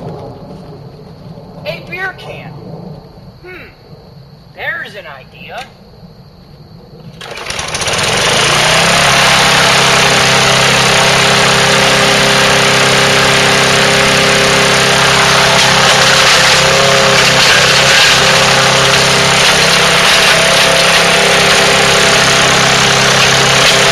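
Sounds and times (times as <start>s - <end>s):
lawn mower engine running: 7.1s - 23.9s.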